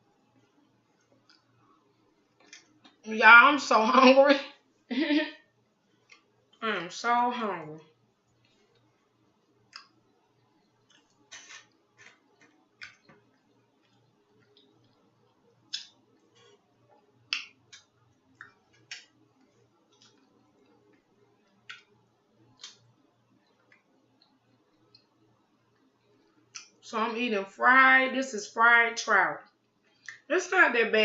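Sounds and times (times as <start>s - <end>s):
mouth smacking while chewing: 10.8s - 15.0s.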